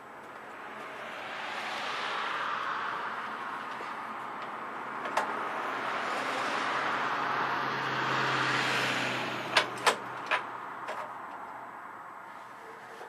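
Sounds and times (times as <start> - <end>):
parts clicking and knocking: 3.6 - 5.5, 9.5 - 11.7.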